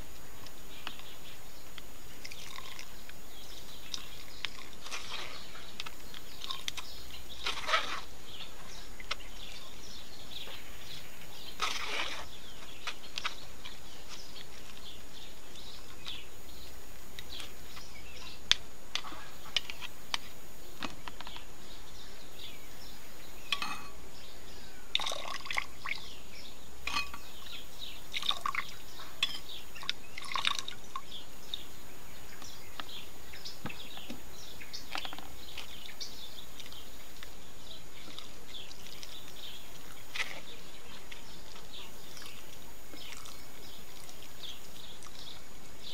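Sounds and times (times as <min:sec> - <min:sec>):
steady background hiss: 0:00.0 - 0:45.9
juice dripping into a glass: 0:02.2 - 0:03.1, 0:24.9 - 0:26.0, 0:28.1 - 0:31.2, 0:42.1 - 0:45.4.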